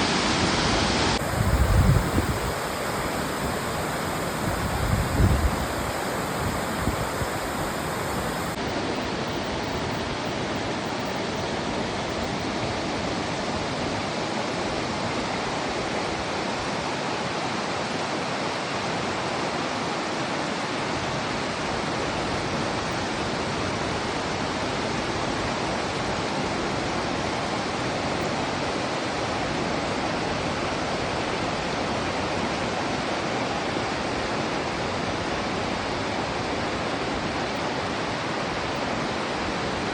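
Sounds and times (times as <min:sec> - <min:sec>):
stream rushing below waterfall: 0:00.0 - 0:39.9.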